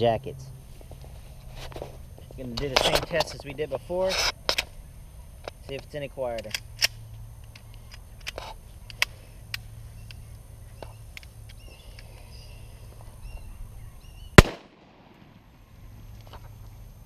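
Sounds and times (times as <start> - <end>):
pistol shot: 14.4 - 15.4.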